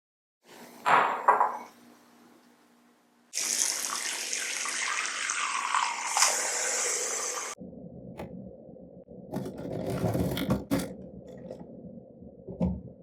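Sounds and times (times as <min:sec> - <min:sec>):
tap water running into sink: 0:03.4 - 0:07.5.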